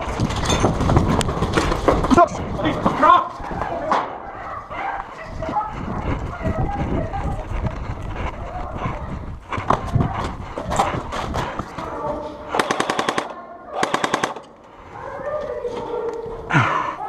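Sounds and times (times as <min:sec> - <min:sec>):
knocks and shuffling: 0:00.0 - 0:16.9
airsoft gun full-auto bursts: 0:12.5 - 0:14.5.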